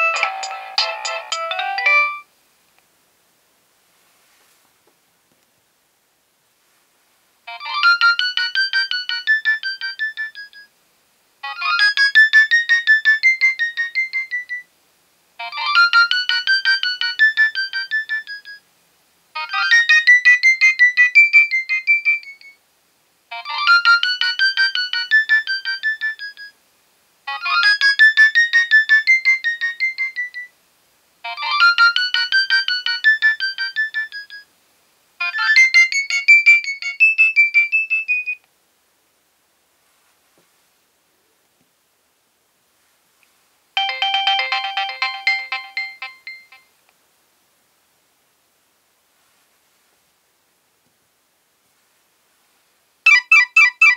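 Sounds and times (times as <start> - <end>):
mobile phone ringtone melody: 0.0 - 2.3, 7.5 - 10.7, 11.4 - 14.7, 15.4 - 18.6, 19.4 - 22.6, 23.3 - 26.5, 27.3 - 30.5, 31.3 - 34.5, 35.2 - 38.4, 43.8 - 46.7, 53.1 - 53.9.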